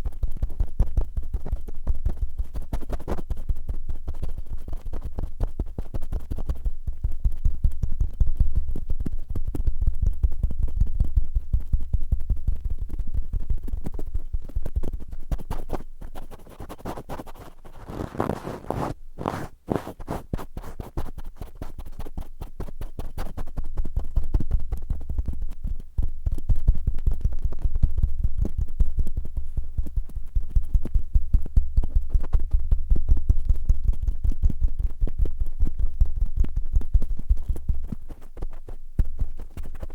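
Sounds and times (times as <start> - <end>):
cotton swabs scratching microphone: 1.4 - 6.7, 13.7 - 32.5, 36.4 - 39.9.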